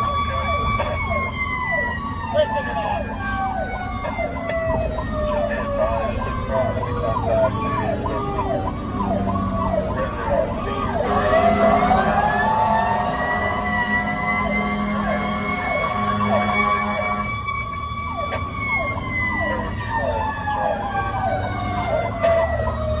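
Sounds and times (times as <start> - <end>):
siren wailing: 0.0 - 23.0
siren quick falling sweeps: 6.5 - 23.0.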